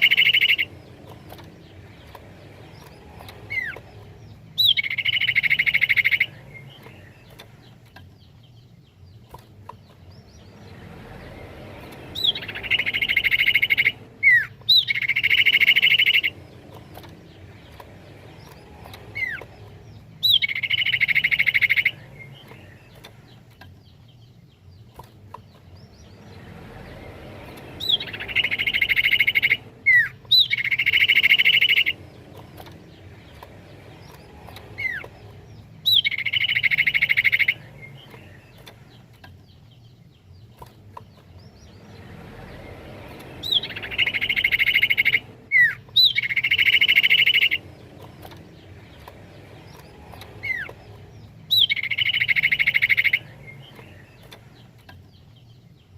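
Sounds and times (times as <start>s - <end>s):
bird whistle and rolling trill: 0.0s - 55.9s.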